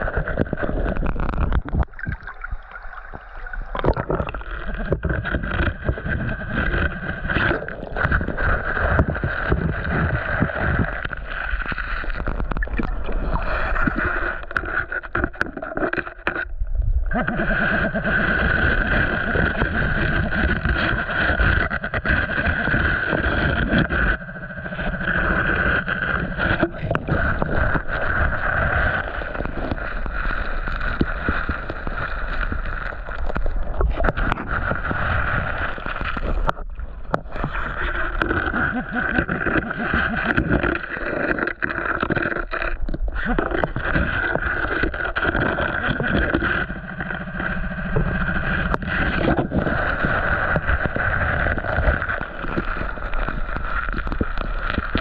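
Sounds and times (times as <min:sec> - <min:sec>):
water sloshing as person wades: 0:00.0 - 0:06.7.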